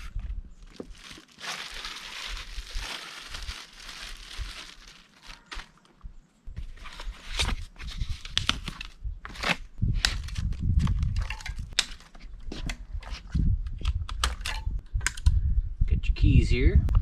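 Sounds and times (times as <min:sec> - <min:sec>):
packing materials rustling: 0:00.0 - 0:13.3
dull low thumps: 0:07.8 - 0:11.7, 0:12.6 - 0:16.2.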